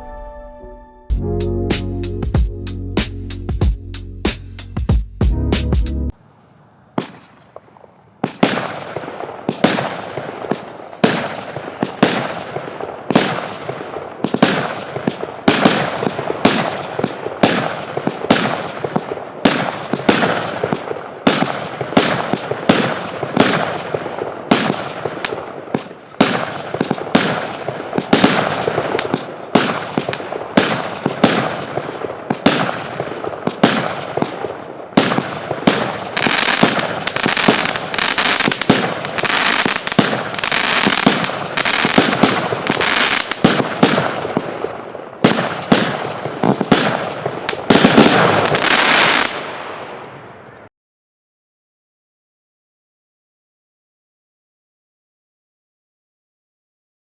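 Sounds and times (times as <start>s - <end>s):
fireworks crackle: 7.0s - 50.5s
fireworks bangs: 7.0s - 50.6s.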